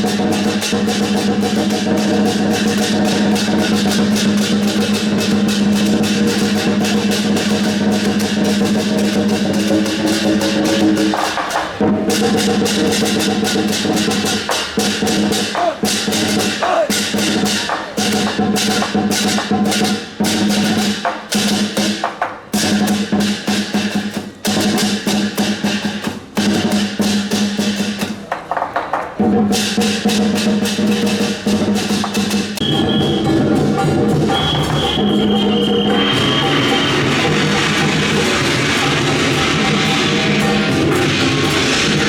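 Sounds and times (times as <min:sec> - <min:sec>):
percussion band playing: 0:00.0 - 0:42.0.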